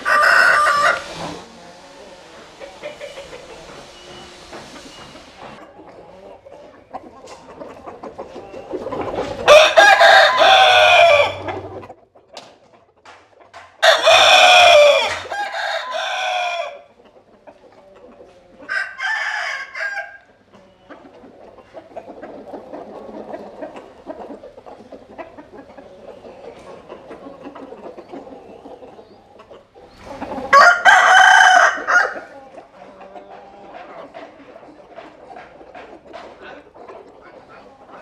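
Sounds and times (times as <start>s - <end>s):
roosters crowing: 0.0s - 6.3s, 9.0s - 11.9s, 13.8s - 17.0s, 18.6s - 20.4s, 30.2s - 32.4s.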